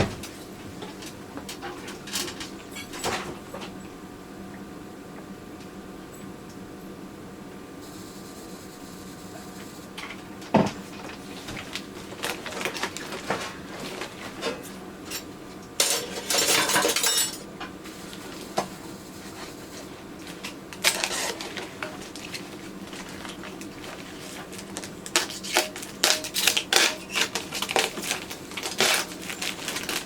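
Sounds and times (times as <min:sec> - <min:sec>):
glass jars and metal clinking: 0:15.1 - 0:17.4.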